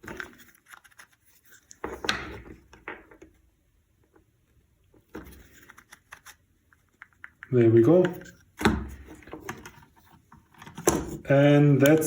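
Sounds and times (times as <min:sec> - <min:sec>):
plastic toy parts clicking and scraping: 0:00.0 - 0:02.2, 0:05.2 - 0:12.0.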